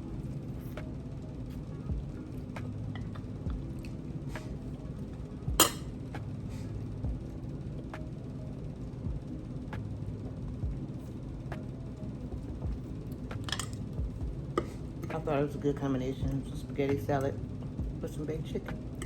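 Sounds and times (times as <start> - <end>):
low steady hum: 0.0 - 19.0
cutlery clinking against plate: 5.6 - 5.9, 13.4 - 13.8.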